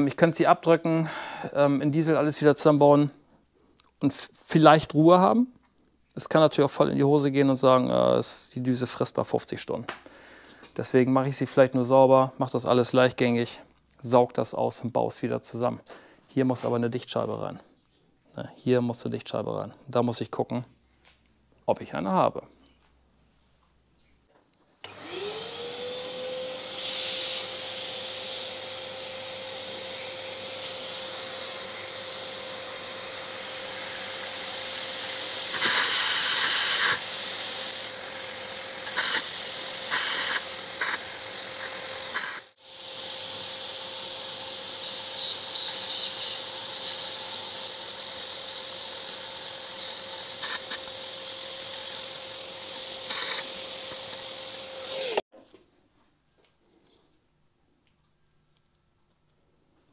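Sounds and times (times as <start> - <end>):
vacuum cleaner motor whine: 24.8 - 55.2
vacuum nozzle sucking hiss: 24.9 - 55.2.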